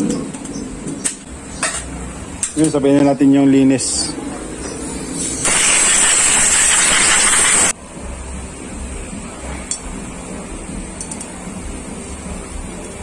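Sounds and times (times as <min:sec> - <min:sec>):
hissing blast of spray: 0:05.2 - 0:07.7.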